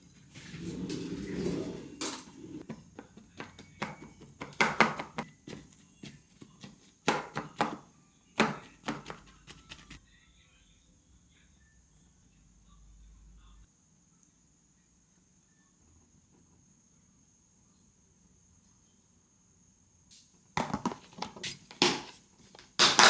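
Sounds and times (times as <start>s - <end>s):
dishes and utensils clattering: 0.7s - 5.6s.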